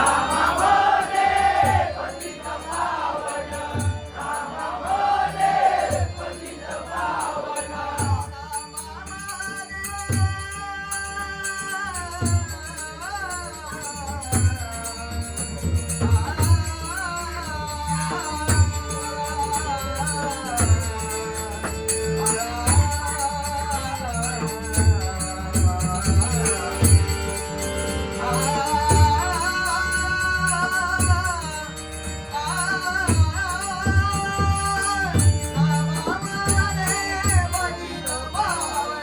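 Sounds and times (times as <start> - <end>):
small cymbals jingling: 8.5 - 39.0.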